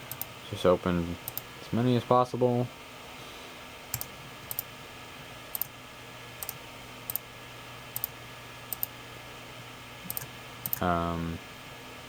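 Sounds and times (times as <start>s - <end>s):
desktop computer hum and hiss: 0.0s - 12.0s
computer mouse double-clicking: 10.1s - 10.8s.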